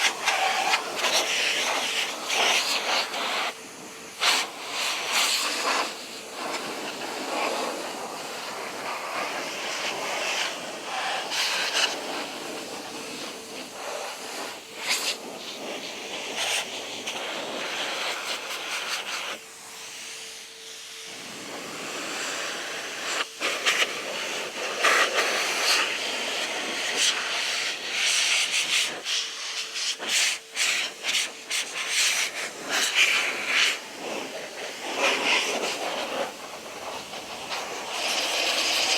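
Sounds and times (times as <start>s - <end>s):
air blower rushing: 0.0s - 38.9s
motor whine: 19.4s - 28.3s.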